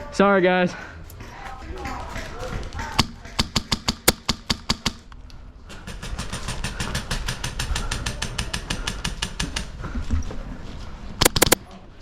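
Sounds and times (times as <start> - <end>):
airsoft rifle shots: 1.5 - 5.1, 11.2 - 11.6.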